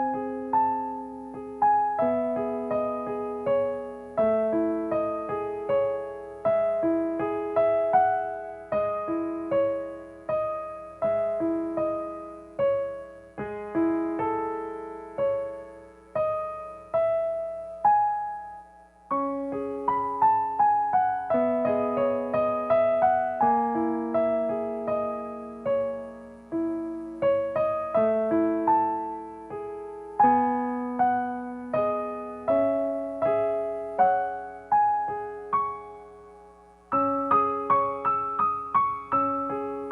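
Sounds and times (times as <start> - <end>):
slow solo piano melody: 0.0 - 39.9.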